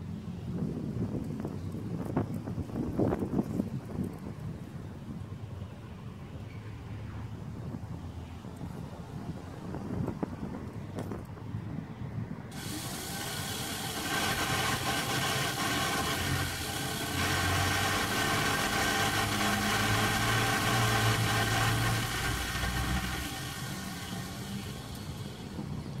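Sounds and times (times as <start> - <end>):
motor humming: 12.5 - 26.0.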